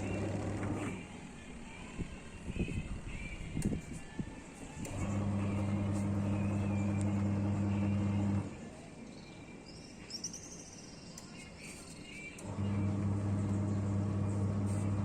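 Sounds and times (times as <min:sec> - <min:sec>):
washing machine motor humming: 0:00.0 - 0:01.0, 0:04.8 - 0:08.6, 0:12.4 - 0:15.0
bird chirp: 0:09.0 - 0:12.4.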